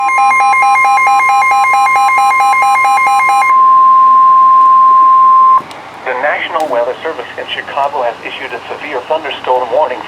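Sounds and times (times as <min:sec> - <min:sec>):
electronic alarm beeping: 0:00.0 - 0:05.6
steady warning alarm tone: 0:00.0 - 0:05.6.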